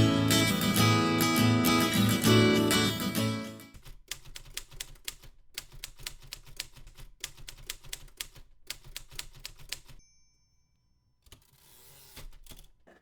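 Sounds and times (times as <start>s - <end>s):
typewriter keys clacking: 3.7s - 10.0s, 11.2s - 13.0s.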